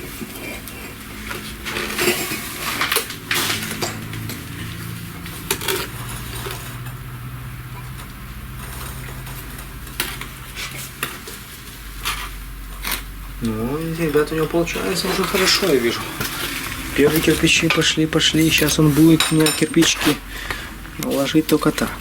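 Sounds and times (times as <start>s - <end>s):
trowel scraping and clinking on bricks: 15.0s - 20.2s.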